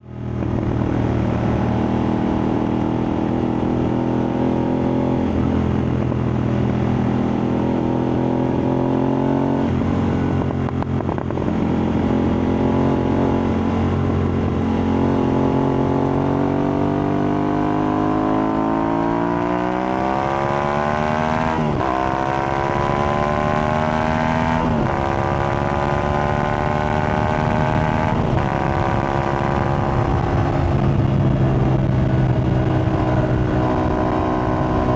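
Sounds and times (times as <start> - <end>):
motorcycle engine accelerating: 0.0 - 34.9.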